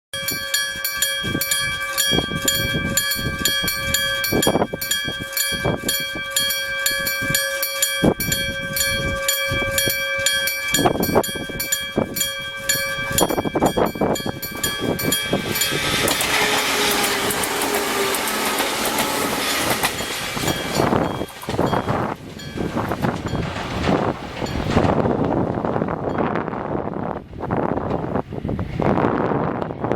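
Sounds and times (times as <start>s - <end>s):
level-crossing bell ringing: 0.1s - 23.7s
train wheels rumbling on rails: 0.1s - 29.9s
wind buffeting microphone: 0.2s - 29.9s.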